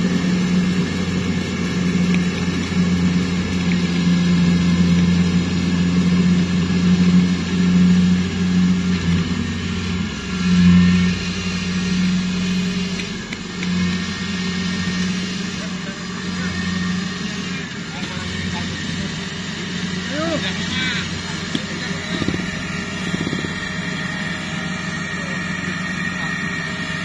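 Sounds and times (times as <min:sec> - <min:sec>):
combine harvester engine running: 0:00.0 - 0:27.0.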